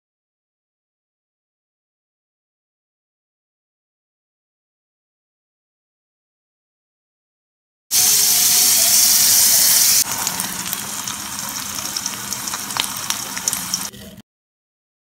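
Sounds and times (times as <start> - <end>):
rushing hiss: 7.9 - 10.0
scattered clicks and ticks: 10.7 - 13.9.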